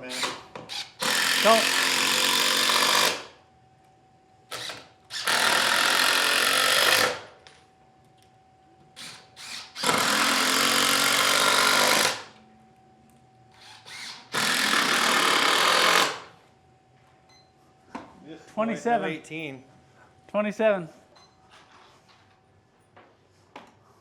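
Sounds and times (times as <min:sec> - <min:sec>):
cordless drill driving screws into wood: 0:00.1 - 0:03.3, 0:04.5 - 0:07.3, 0:09.0 - 0:12.3, 0:13.6 - 0:16.3.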